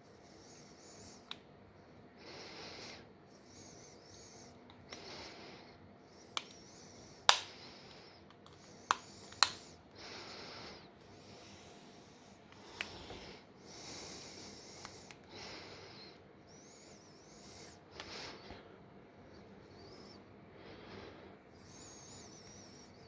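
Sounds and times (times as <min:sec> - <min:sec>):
sharp clicks: 0:07.3 - 0:07.6, 0:08.3 - 0:09.7.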